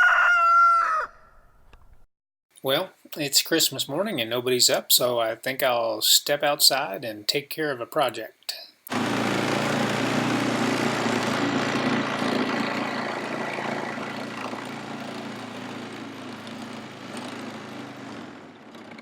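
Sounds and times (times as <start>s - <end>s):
engine running: 8.9s - 19.0s.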